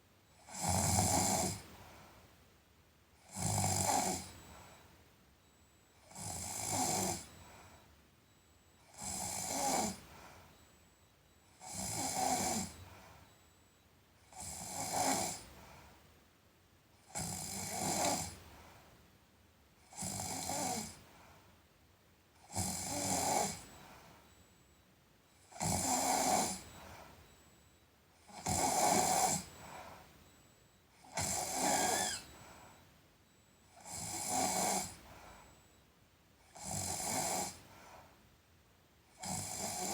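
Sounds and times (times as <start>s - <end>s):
person snoring: 25.6s - 26.6s, 28.3s - 29.5s, 31.1s - 32.2s, 33.8s - 35.0s, 36.6s - 37.6s, 39.2s - 39.9s.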